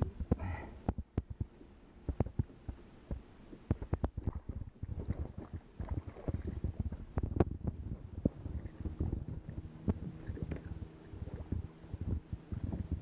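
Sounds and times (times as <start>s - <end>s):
low rumble: 4.0s - 13.0s.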